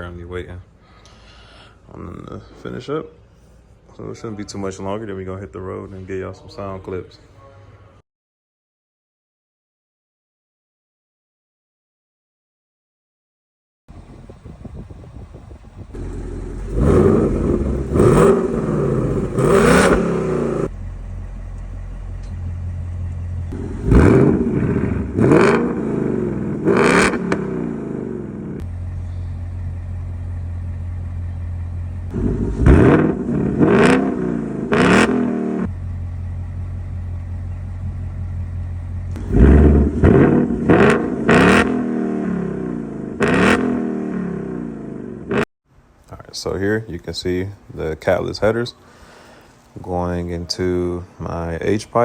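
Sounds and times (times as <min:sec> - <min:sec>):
car engine idling and revving: 0:13.9 - 0:45.5.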